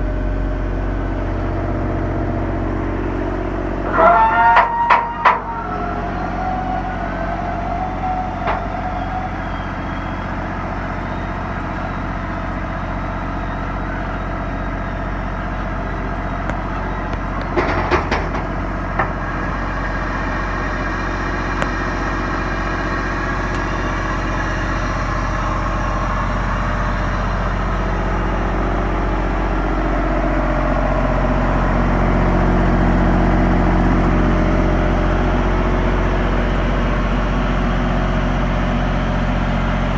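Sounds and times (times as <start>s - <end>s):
excavator engine running: 0.0s - 39.9s.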